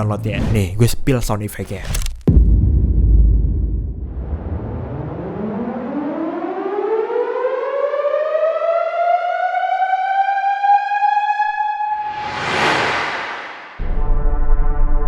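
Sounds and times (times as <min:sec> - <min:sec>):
synthesized rising tone: 0:11.9 - 0:14.3
noisy whoosh: 0:12.0 - 0:14.3.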